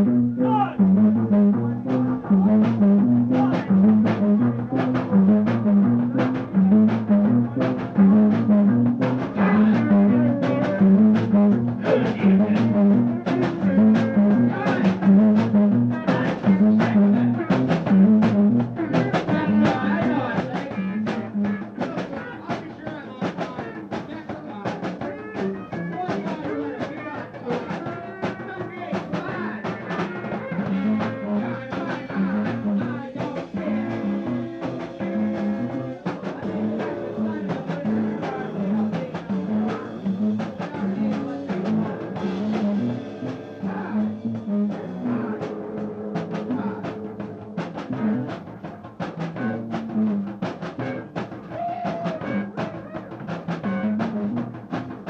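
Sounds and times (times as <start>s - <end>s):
repeating bass riff: 0.0s - 21.9s, 30.4s - 51.2s, 53.5s - 54.8s
guitar: 0.0s - 55.0s
rock band playing: 0.0s - 55.0s
steady drum beat: 0.0s - 55.0s.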